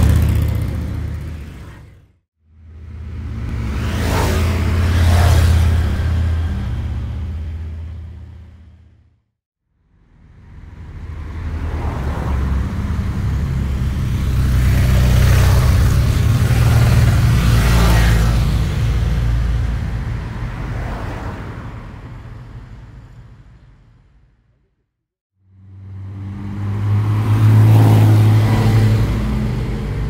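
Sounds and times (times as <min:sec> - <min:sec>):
motorcycle passing by: 0:00.0 - 0:08.3, 0:10.8 - 0:19.9, 0:25.5 - 0:30.0.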